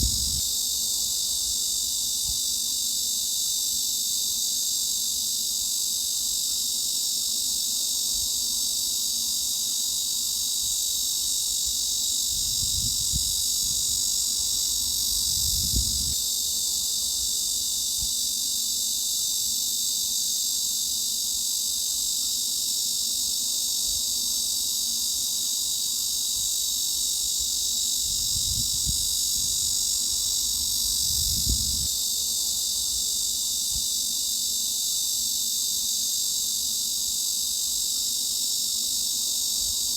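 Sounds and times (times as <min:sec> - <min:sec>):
cicadas buzzing: 0:00.0 - 0:39.9.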